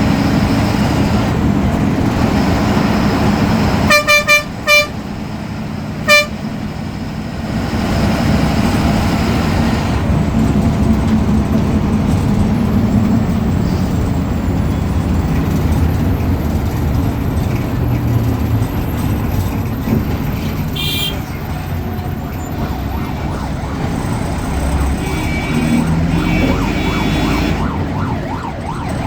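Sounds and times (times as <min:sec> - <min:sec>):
bus diesel engine rumbling: 0:00.0 - 0:29.0
horn toots: 0:03.8 - 0:05.0, 0:06.0 - 0:06.4, 0:20.7 - 0:21.4, 0:24.5 - 0:27.6.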